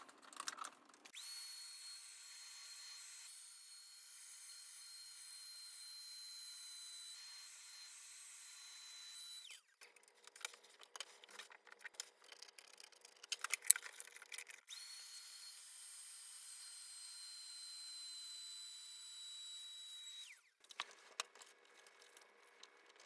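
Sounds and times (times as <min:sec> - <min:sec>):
plastic keyboard parts rattling: 0:00.0 - 0:01.1.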